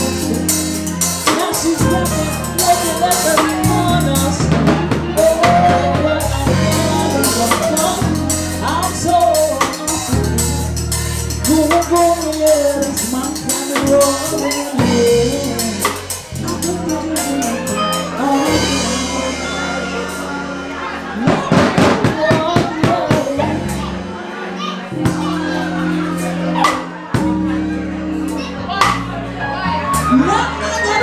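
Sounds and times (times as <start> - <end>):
drum kit with cymbals: 0.0 - 24.0, 24.9 - 27.7
person singing sliding notes: 0.0 - 24.1
bass line: 0.0 - 31.0.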